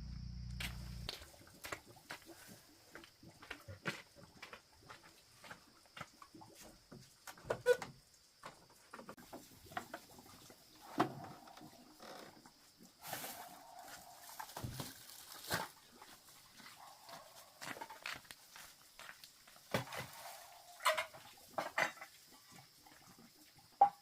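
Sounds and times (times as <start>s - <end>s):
animal sounds: 9.7s - 15.1s, 15.7s - 18.2s, 19.8s - 23.8s.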